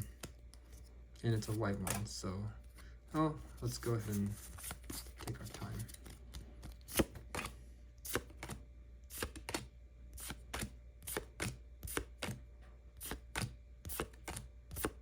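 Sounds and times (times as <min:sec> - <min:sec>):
cards snapping as flicked: 0:08.1 - 0:12.4, 0:13.0 - 0:15.0.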